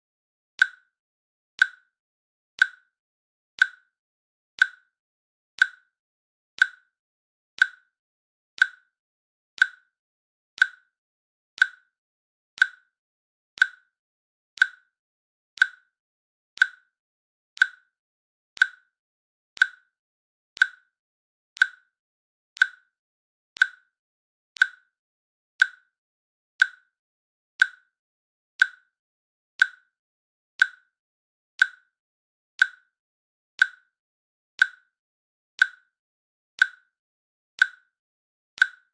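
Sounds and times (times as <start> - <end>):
timer clicking: 0.6 - 0.9, 1.6 - 1.9, 2.6 - 2.9, 3.6 - 4.0, 4.6 - 4.9, 5.6 - 5.9, 6.6 - 7.0, 7.6 - 8.0, 8.6 - 9.0, 9.6 - 10.0, 10.6 - 11.0, 11.6 - 12.0, 12.6 - 13.0, 13.6 - 14.0, 14.6 - 15.0, 15.6 - 16.0, 16.6 - 17.0, 17.6 - 18.0, 18.6 - 19.0, 19.6 - 20.0, 20.6 - 21.0, 21.6 - 22.0, 22.6 - 23.0, 23.6 - 24.0, 24.6 - 25.0, 25.6 - 26.0, 26.6 - 27.0, 27.6 - 28.0, 28.6 - 29.0, 29.6 - 30.0, 30.6 - 31.0, 31.6 - 32.0, 32.6 - 33.0, 33.6 - 34.0, 34.6 - 35.0, 35.6 - 36.0, 36.6 - 37.0, 37.6 - 38.0, 38.6 - 38.9.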